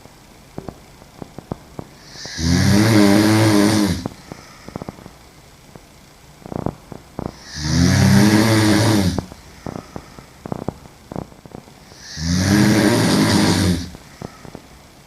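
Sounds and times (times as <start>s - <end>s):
woman snoring loudly: 2.0s - 5.0s, 6.5s - 10.6s, 11.8s - 14.6s
faint clicks: 4.0s - 7.4s, 9.2s - 11.8s.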